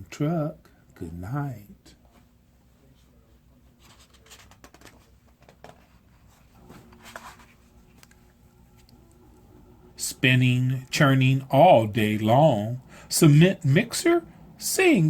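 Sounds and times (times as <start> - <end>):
book page rustling and turning: 3.8 - 8.2.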